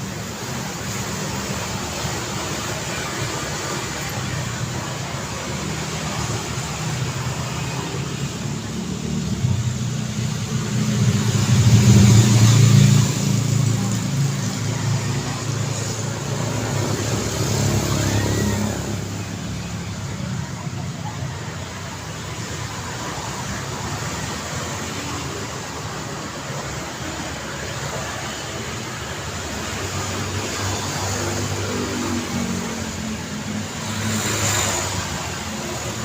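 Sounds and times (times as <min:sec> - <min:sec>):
vehicle passing close: 0:00.0 - 0:20.6
street traffic: 0:00.0 - 0:36.0.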